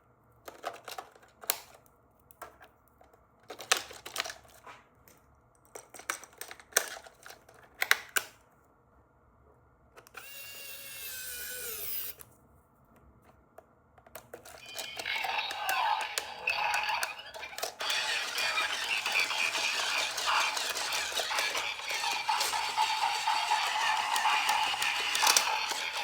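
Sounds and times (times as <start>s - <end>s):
small electric motor whirring: 10.2s - 12.2s, 14.6s - 26.0s.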